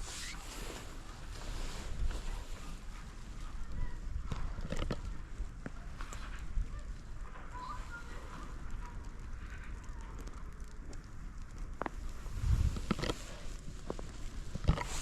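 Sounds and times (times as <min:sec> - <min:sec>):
wind rumbling on microphone: 0:00.0 - 0:15.0
footsteps crunching in snow: 0:12.1 - 0:15.0.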